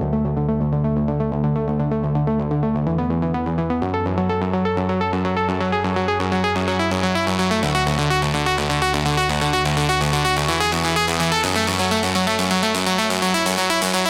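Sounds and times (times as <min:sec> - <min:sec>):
house music with synthesizer chords: 0:00.0 - 0:14.0.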